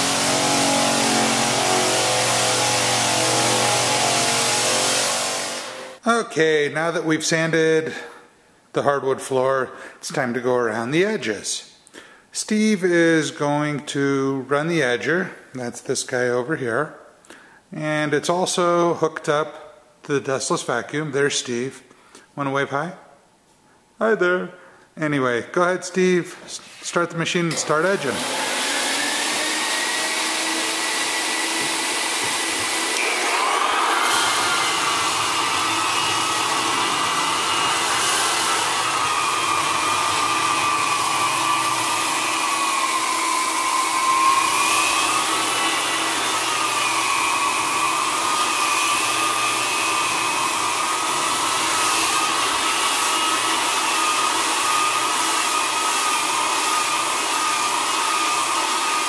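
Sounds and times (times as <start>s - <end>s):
floor edger sanding: 0.0s - 6.0s, 27.5s - 59.0s
vacuum whining: 0.0s - 6.0s, 27.5s - 59.0s.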